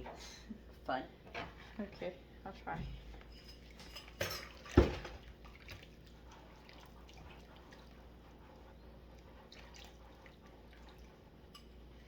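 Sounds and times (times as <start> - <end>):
water dripping and splashing: 3.7 - 8.2, 9.1 - 12.0.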